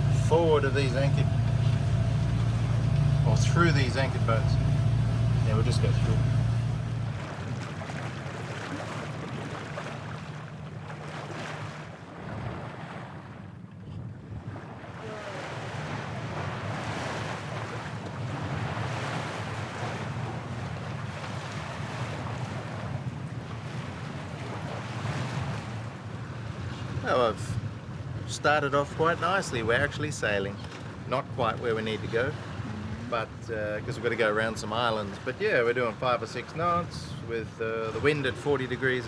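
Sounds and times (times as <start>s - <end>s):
steady low drone: 0.0s - 7.6s, 32.6s - 33.8s
wind buffeting microphone: 0.0s - 28.3s
water noise: 0.0s - 39.0s.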